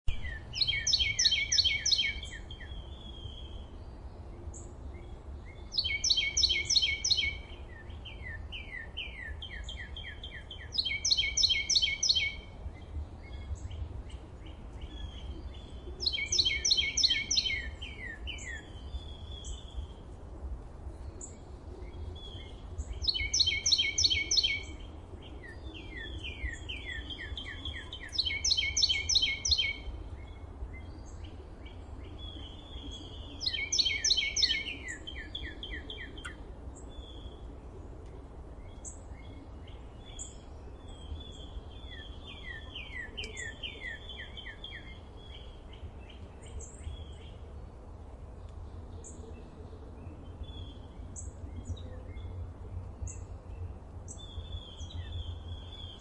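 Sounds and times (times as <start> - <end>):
soft bird chirps: 0.1 - 20.1, 20.9 - 47.6
steady low rumble: 12.3 - 56.0.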